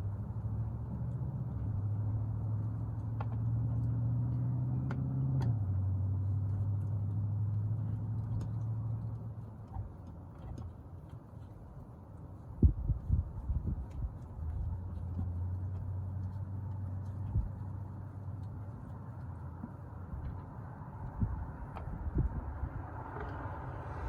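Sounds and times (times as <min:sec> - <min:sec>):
vehicle engine passing by: 0:00.0 - 0:09.5, 0:14.3 - 0:24.0.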